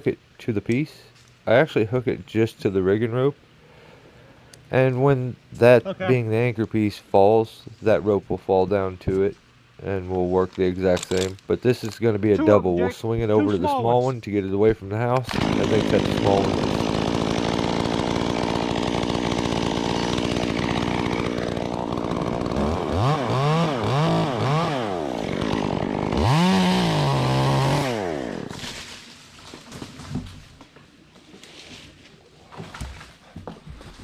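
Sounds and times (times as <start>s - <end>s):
chainsaw revving: 15.3s - 28.7s.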